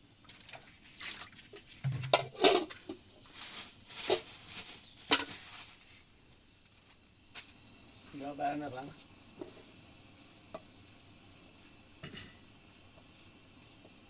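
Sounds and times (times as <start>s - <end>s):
knocks and scraping clatters: 1.8s - 3.1s.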